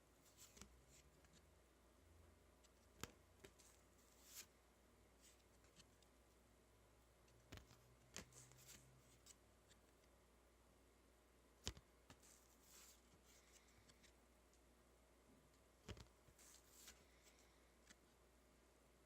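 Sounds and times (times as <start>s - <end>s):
cards and wrappers rustling: 0.2s - 1.4s, 2.9s - 4.5s, 15.9s - 17.5s.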